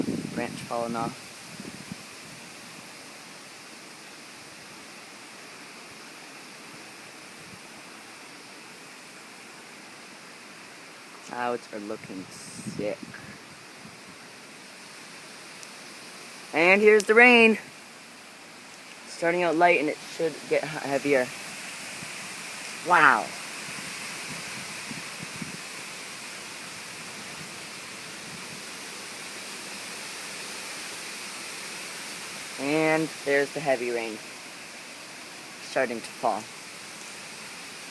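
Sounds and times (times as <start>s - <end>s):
strong storm wind: 0.0s - 3.0s, 11.4s - 14.3s, 19.1s - 28.8s
heavy rain hissing: 0.0s - 37.9s.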